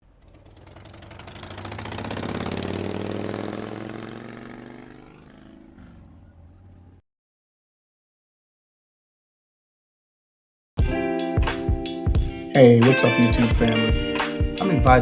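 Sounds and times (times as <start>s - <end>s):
motorcycle engine rumbling: 0.0s - 7.0s.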